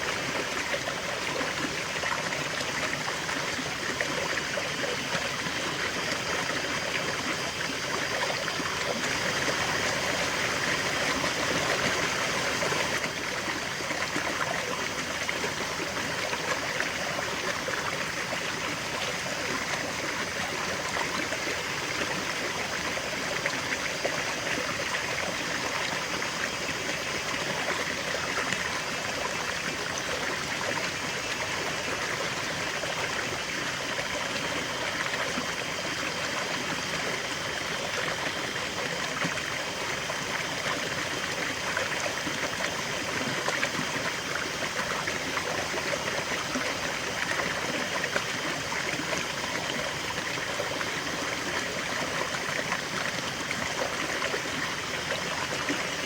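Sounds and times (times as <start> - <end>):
river water babbling over stones: 0.0 - 56.0.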